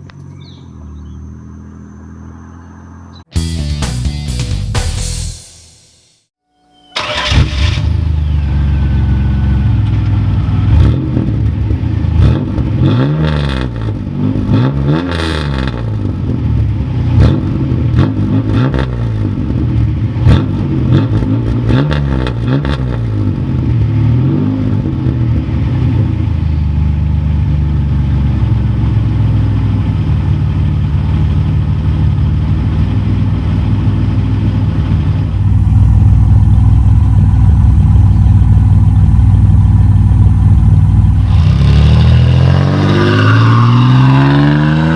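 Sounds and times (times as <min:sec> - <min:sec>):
car engine exhaust revving: 0:07.0 - 0:44.9.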